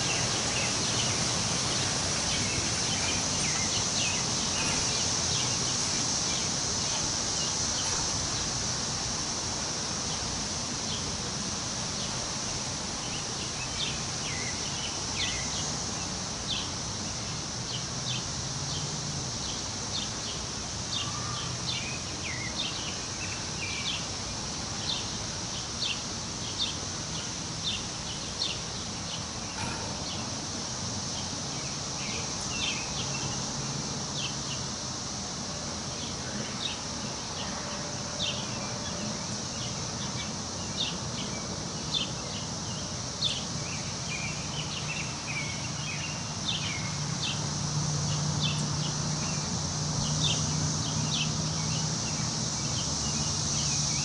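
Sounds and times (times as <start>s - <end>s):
birds chirping: 0.0s - 8.4s
wind rustling through trees: 0.0s - 54.0s.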